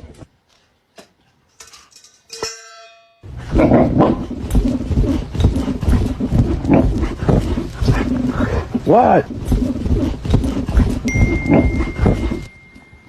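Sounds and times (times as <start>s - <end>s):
metallic clang: 1.5s - 3.3s.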